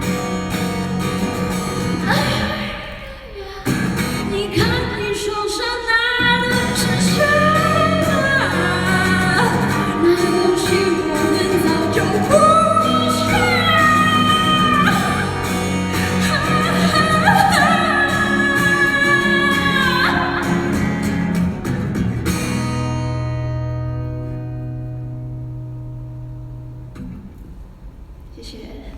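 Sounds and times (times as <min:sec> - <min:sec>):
person singing: 0:02.0 - 0:21.2.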